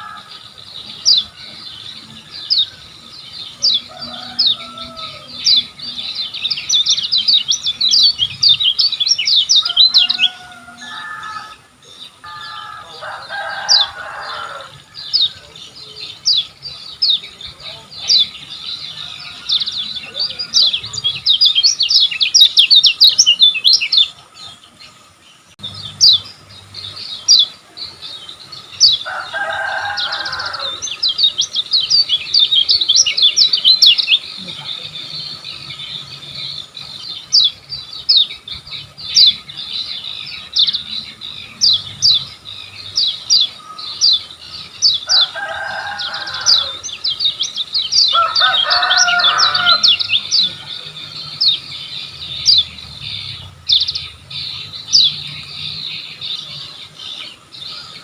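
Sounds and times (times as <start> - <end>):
lower bird call: 0.0 - 24.7
bird singing high chirps: 0.0 - 58.0.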